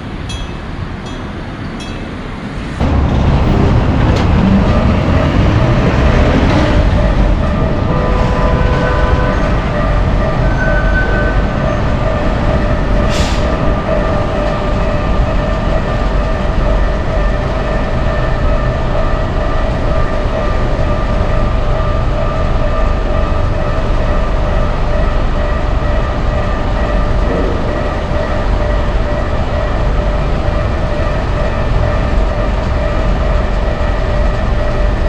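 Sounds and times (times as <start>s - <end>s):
electric train rumbling past: 0.0s - 35.0s
whining tones: 26.2s - 31.5s.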